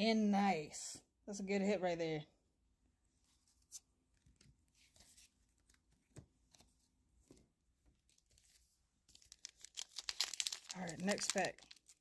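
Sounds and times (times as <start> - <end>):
trading cards rustling: 8.0 - 12.0
foil wrapper crackling: 9.1 - 12.0.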